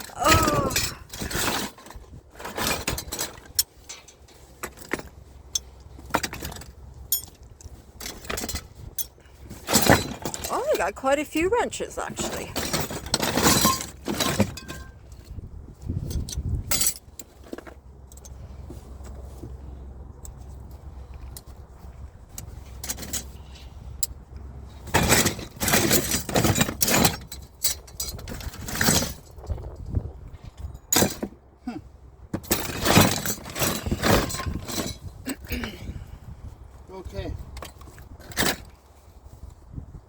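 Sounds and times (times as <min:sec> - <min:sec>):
hand tools clinking and clattering: 0:00.0 - 0:15.3, 0:16.0 - 0:19.4, 0:24.8 - 0:29.4, 0:32.4 - 0:35.9.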